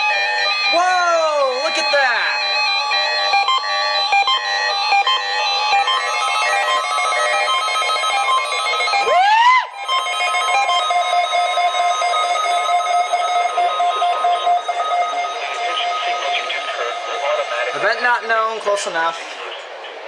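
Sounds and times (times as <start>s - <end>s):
electronic alert tones: 9.8s - 18.8s.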